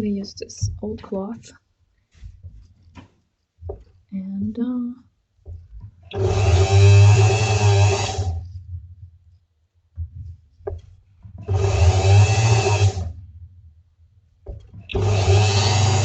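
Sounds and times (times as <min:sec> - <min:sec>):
rotary power tool spinning: 0:06.1 - 0:08.6, 0:11.4 - 0:13.2, 0:14.5 - 0:16.0.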